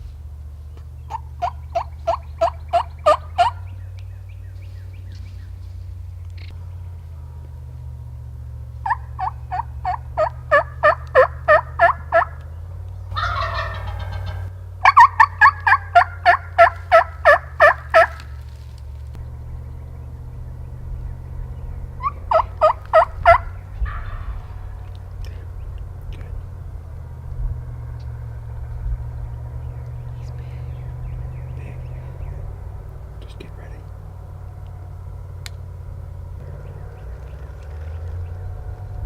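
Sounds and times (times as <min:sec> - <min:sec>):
low hum: 0:00.0 - 0:39.0
turkey gobbling: 0:00.7 - 0:38.9
turkey yelping: 0:00.8 - 0:18.6, 0:19.2 - 0:38.8.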